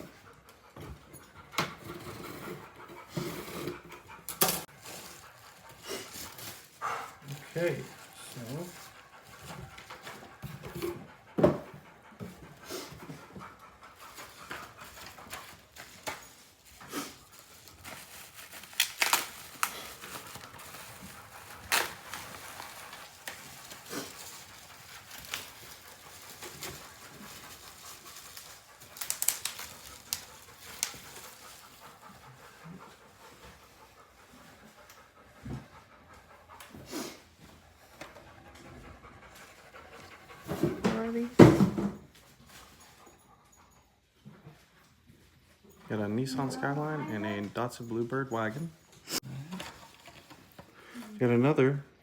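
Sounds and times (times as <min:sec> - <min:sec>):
cardboard packaging rustling: 0:04.6 - 0:10.1, 0:14.0 - 0:32.0, 0:49.4 - 0:50.8
sharp rips and clicks: 0:18.6 - 0:20.0.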